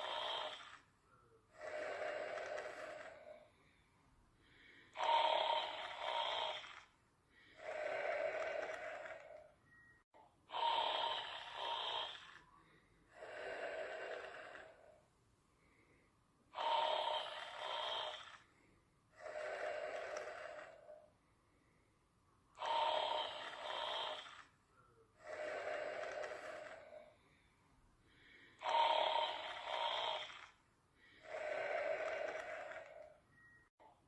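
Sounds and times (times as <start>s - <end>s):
person snoring: 0.0s - 0.8s, 1.5s - 3.6s, 4.4s - 9.5s, 10.5s - 15.0s, 15.6s - 21.1s, 22.6s - 24.5s, 25.2s - 27.2s, 28.1s - 33.2s.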